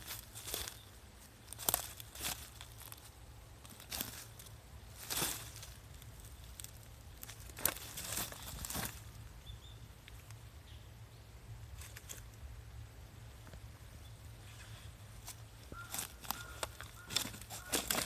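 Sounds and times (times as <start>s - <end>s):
footsteps in dry leaf litter: 0.0s - 9.2s, 15.2s - 18.0s.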